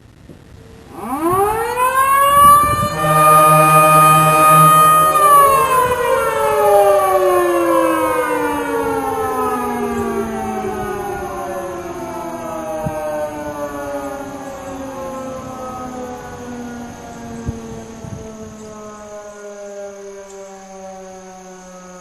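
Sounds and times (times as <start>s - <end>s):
mechanical sirens winding down: 0.5s - 22.0s.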